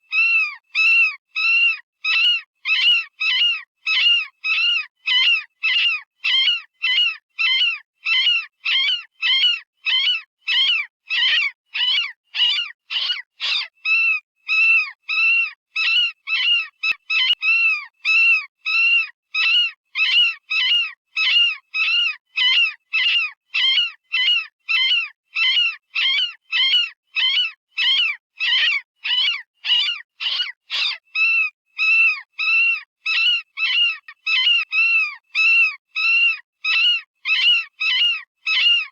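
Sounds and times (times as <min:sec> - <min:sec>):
synthetic rabbit distress squeals: 0:25.5 - 0:38.9.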